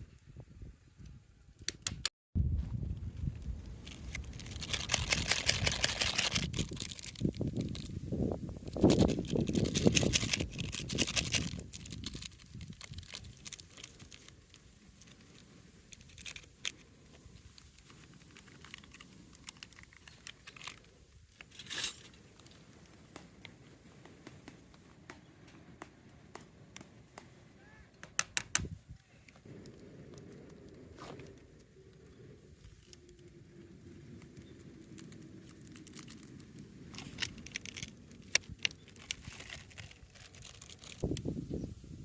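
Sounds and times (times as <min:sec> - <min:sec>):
sharp clicks: 0:01.6 - 0:02.1
rustling and crinkling: 0:02.6 - 0:42.0.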